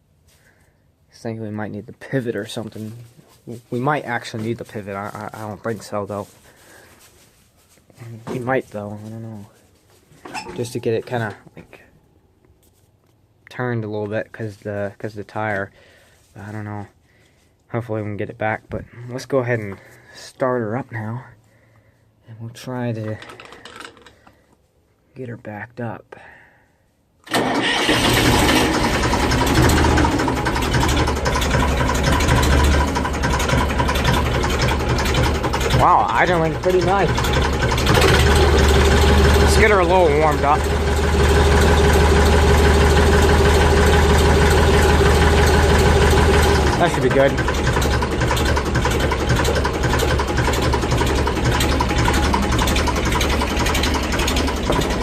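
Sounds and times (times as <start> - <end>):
tractor engine idling: 27.3 - 55.0.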